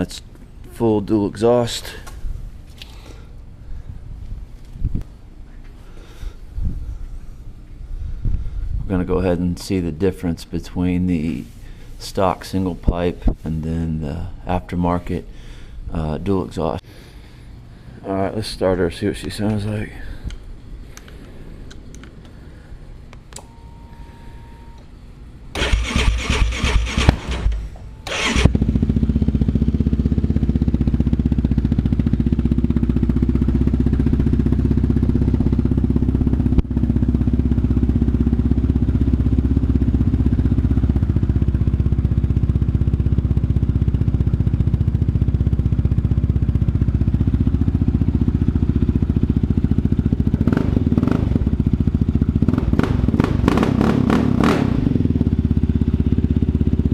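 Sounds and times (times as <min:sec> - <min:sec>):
electric starter cranking: 0:25.6 - 0:28.5
atv engine idling: 0:28.1 - 0:56.9.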